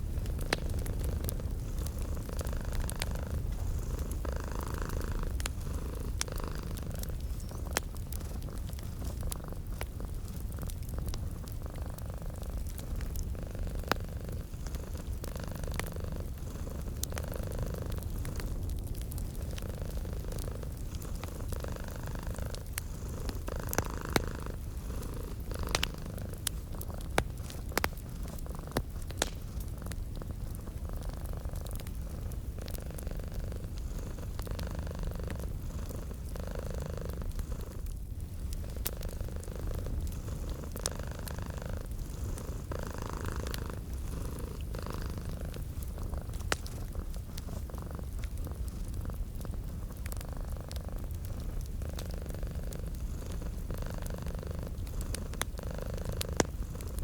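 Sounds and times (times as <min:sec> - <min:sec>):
cat purring: 0:00.0 - 0:57.0
wood fire crackling and popping: 0:00.0 - 0:57.0.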